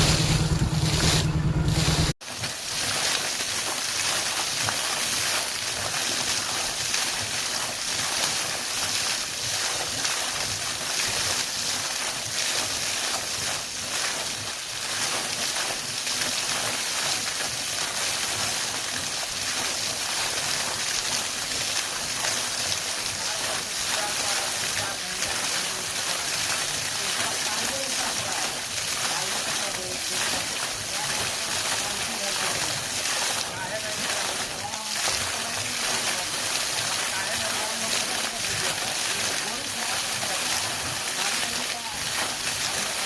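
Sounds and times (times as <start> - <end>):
air and water gushing: 0.0 - 43.0.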